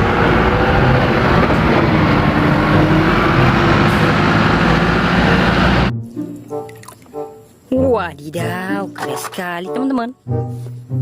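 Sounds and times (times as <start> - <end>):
vehicle engine running loudly: 0.0 - 5.9.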